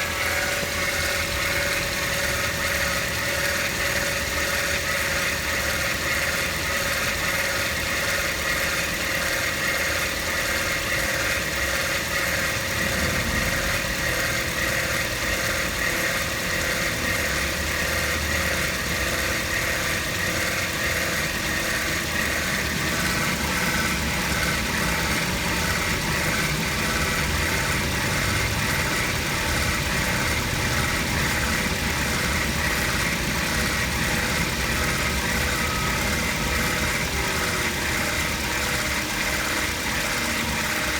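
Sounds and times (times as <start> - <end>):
car engine idling: 0.0 - 40.9
high-pitched whir: 0.0 - 40.9.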